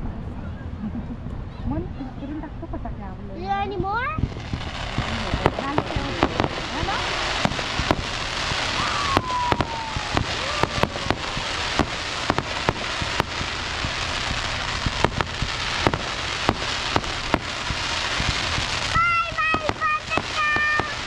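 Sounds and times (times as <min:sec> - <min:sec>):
fireworks bangs and pops: 0:04.1 - 0:21.0
crackling hiss: 0:04.2 - 0:21.0
falling firework whistles: 0:04.2 - 0:21.0.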